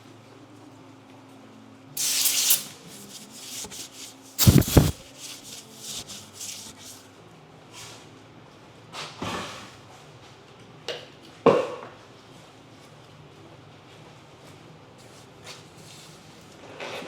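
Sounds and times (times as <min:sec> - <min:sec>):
hissing rub: 0:02.0 - 0:07.0
light scuffs and shuffles: 0:02.1 - 0:07.0.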